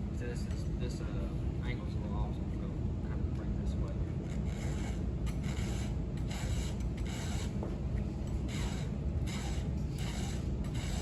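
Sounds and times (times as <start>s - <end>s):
file rasping on metal: 4.2s - 7.6s, 8.4s - 11.0s.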